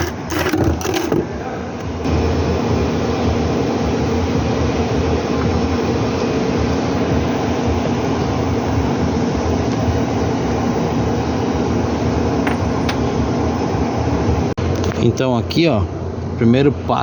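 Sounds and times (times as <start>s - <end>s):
truck differential growling: 0.0s - 2.1s.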